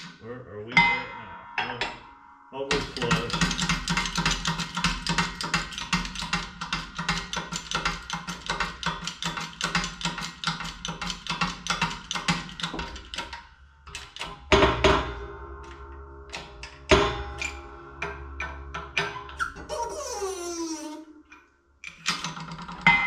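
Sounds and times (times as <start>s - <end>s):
fast percussive beat: 2.7s - 6.6s.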